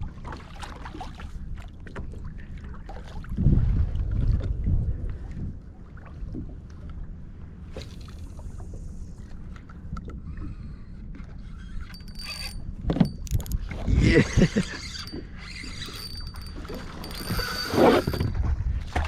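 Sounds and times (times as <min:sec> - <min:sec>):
water sloshing against hull: 0:00.0 - 0:19.0
wind on microphone: 0:03.3 - 0:05.7, 0:11.6 - 0:19.0.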